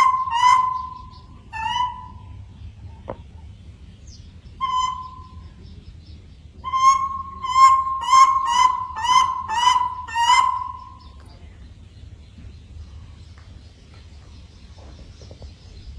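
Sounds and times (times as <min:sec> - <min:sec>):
monkey calling: 0:00.0 - 0:02.5, 0:04.6 - 0:05.5, 0:06.6 - 0:11.2.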